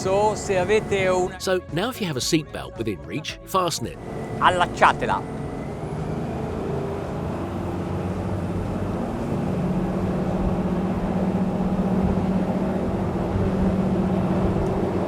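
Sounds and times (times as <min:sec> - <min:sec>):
boat engine drone: 0:00.0 - 0:01.4, 0:03.8 - 0:15.0
wind: 0:04.0 - 0:15.0.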